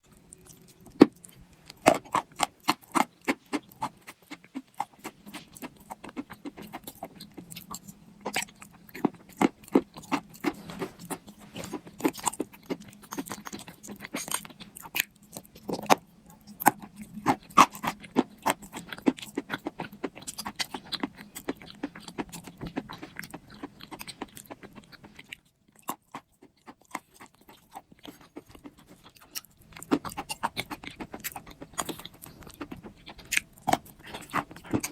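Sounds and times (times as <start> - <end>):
faint low hum: 0.0 - 34.9.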